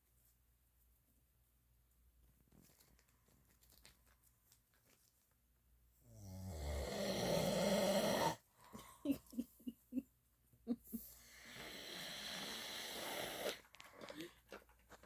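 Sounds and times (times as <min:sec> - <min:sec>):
person snoring: 0:06.1 - 0:08.4, 0:11.1 - 0:13.6
short breath puffs: 0:10.9 - 0:14.4.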